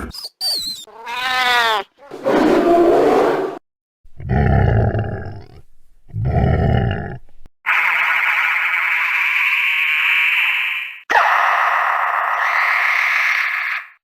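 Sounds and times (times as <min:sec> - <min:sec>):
monstrous growling roars: 0:04.2 - 0:14.0
monster cry: 0:06.3 - 0:14.0.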